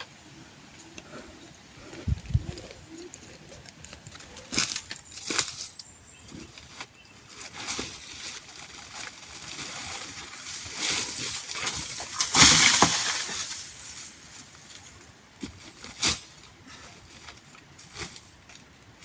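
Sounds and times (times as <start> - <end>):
low thuds: 1.8 - 4.3
tree falling with rushing leaves: 7.3 - 14.9.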